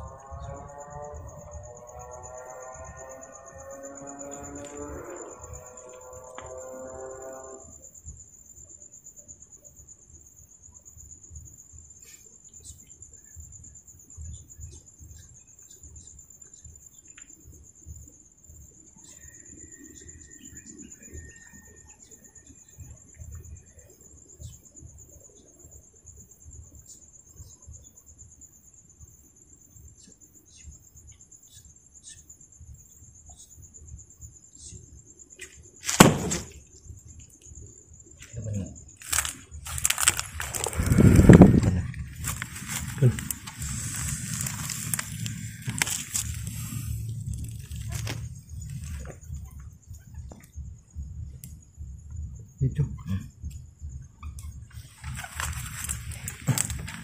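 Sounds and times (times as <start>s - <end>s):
crickets chirring: 0.0s - 57.0s
faint low thumps and rumbles: 38.2s - 57.0s.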